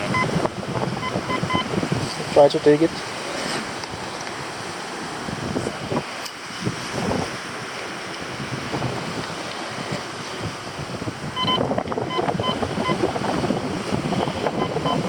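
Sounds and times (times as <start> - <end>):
metal detector beeps: 0.0 - 0.4, 1.0 - 1.7, 11.4 - 13.0, 14.6 - 15.0
wind on microphone: 0.0 - 15.0.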